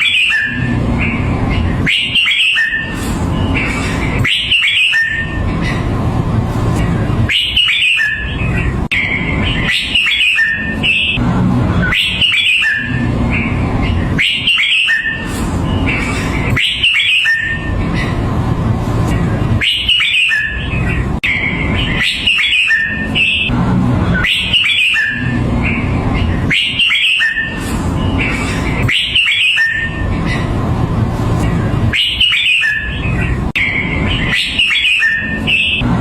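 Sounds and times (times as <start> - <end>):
bird singing whistled phrase: 1.8 - 3.0, 4.2 - 5.4, 7.3 - 11.2, 11.8 - 13.4, 14.2 - 15.8, 16.6 - 17.7, 19.6 - 23.5, 24.2 - 25.8, 28.9 - 30.0, 32.0 - 35.8
low rumble: 5.2 - 7.4, 11.2 - 12.0, 17.6 - 19.7, 23.4 - 24.3, 29.9 - 32.0.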